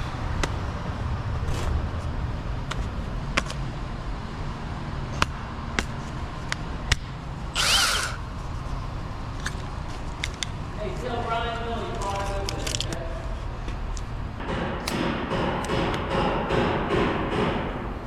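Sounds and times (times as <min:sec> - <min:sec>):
power tool humming: 0:07.5 - 0:08.3
higher whir: 0:07.5 - 0:08.5.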